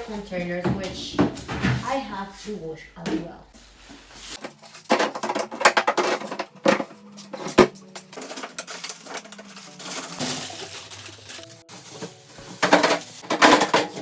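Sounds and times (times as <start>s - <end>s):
handling noise: 4.4s - 14.0s
plastic containers clattering: 4.4s - 14.0s.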